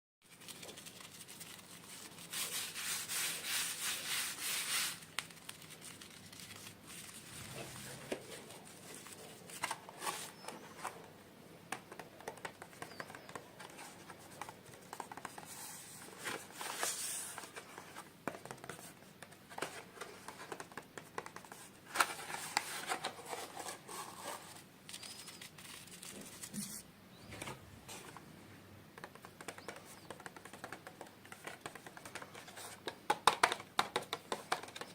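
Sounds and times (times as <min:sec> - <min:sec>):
packaging crinkling and tearing: 0:04.9 - 0:08.0
small clicks and taps: 0:29.0 - 0:34.9.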